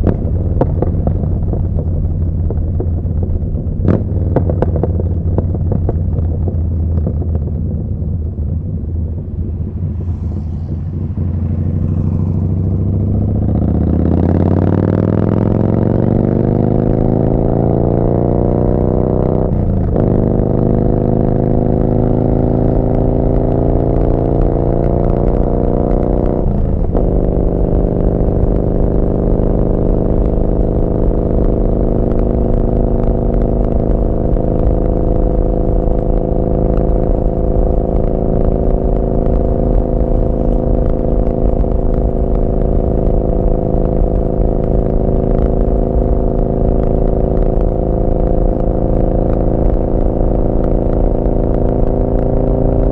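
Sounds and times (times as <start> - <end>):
motorcycle engine accelerating: 0.0 - 52.9.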